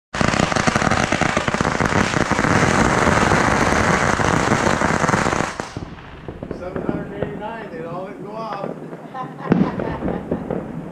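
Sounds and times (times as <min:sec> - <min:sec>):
fireworks crackling: 0:00.1 - 0:10.9.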